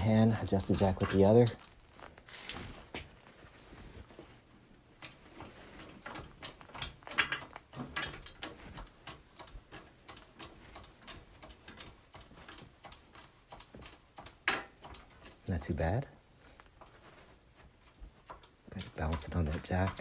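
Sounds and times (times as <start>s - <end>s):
jack clicking and knocking: 0.0s - 1.5s, 5.0s - 15.8s, 18.0s - 20.0s.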